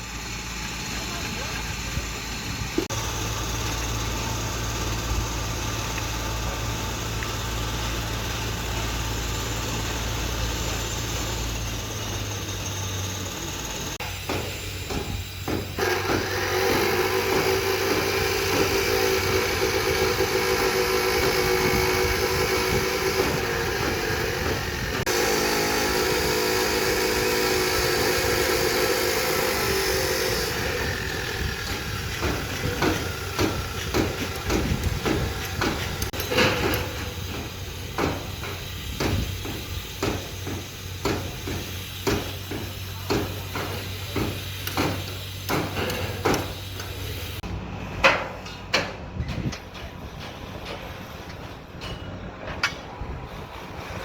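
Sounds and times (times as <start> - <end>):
motor whine: 0.0 - 39.9
construction machinery engine hum: 0.0 - 54.0.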